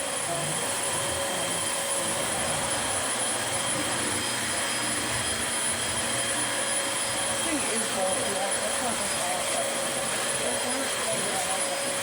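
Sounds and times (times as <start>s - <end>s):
vacuum cleaner running: 0.0s - 12.0s.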